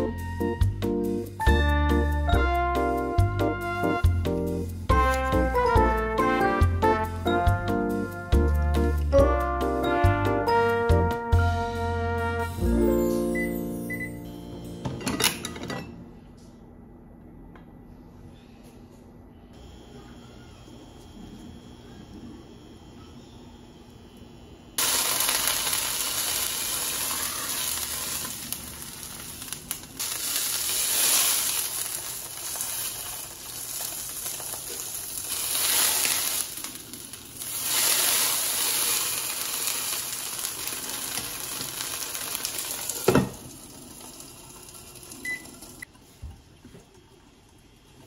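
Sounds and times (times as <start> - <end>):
food sizzling in a frying pan: 24.8 - 45.8.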